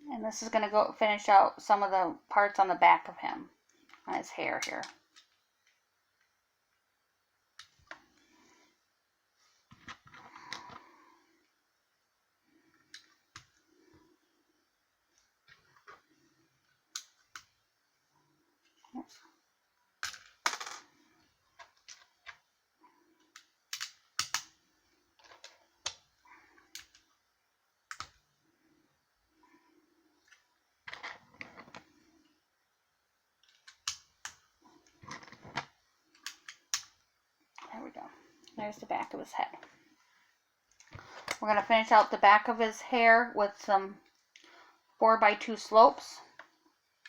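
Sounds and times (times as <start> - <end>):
plastic bricks clicking: 23.3 - 24.5, 33.4 - 34.4.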